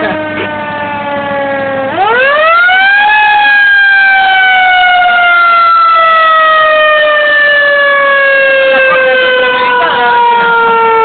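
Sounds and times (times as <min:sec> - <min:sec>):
fire engine siren wailing: 0:00.0 - 0:11.0.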